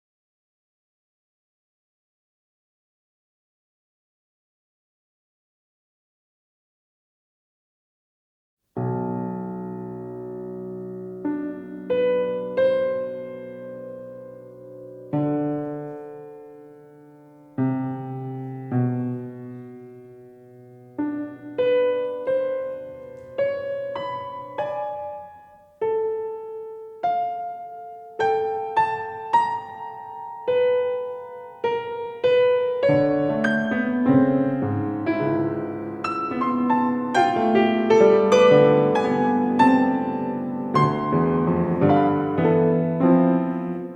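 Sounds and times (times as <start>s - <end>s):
slow solo piano: 8.8s - 43.9s.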